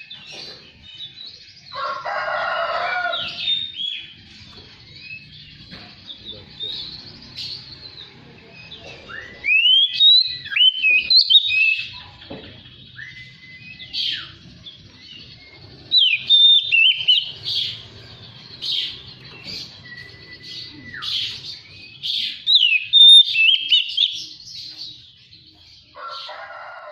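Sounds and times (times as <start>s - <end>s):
bird singing whistled phrases: 9.1s - 12.0s, 12.9s - 14.4s, 15.4s - 17.4s, 18.9s - 24.2s.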